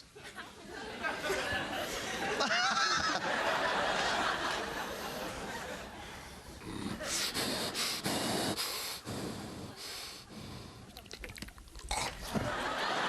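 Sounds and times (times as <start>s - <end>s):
breathy mouth huffs and snorts: 6.4s - 12.5s
mouth clicks: 10.9s - 12.4s.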